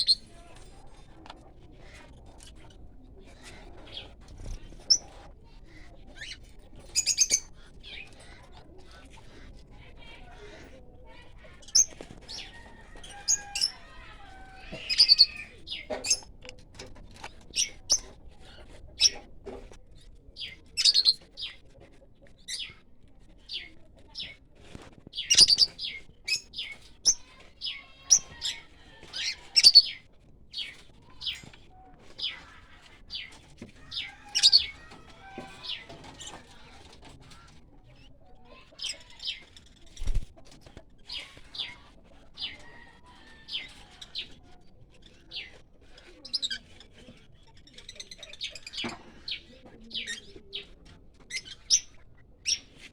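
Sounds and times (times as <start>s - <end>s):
parrots chirping shrilly: 13.0s - 15.5s.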